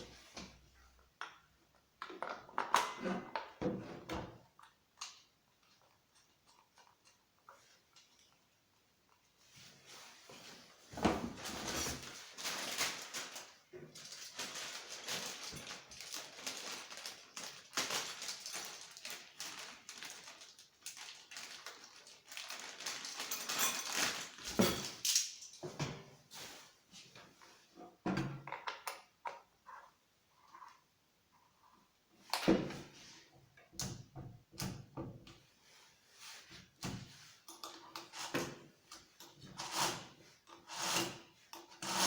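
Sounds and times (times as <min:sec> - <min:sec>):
rustling and crackling handling: 0:05.6 - 0:25.7.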